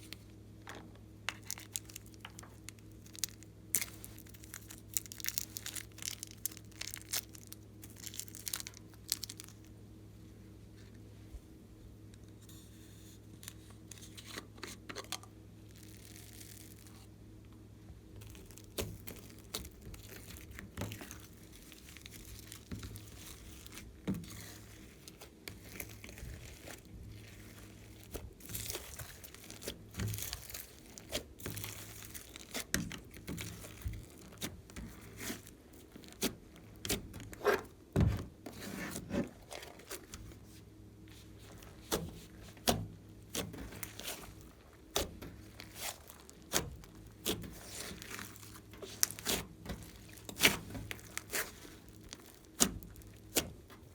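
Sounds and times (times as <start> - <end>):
low electrical hum: 0.0 - 53.9
hands squishing slime: 1.3 - 9.7, 18.2 - 37.7, 38.6 - 53.9.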